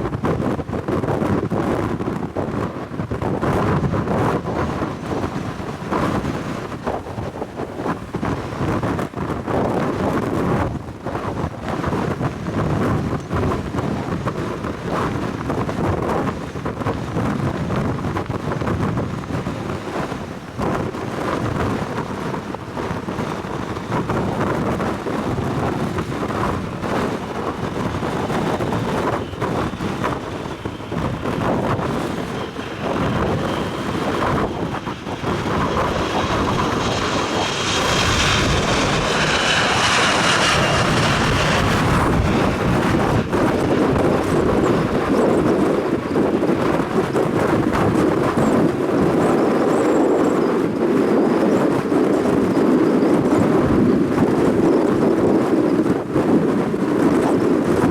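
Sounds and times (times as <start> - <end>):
airliner engines rumbling: 0.0 - 57.9
wind buffeting microphone: 0.0 - 57.9
high engine whine: 23.6 - 48.0.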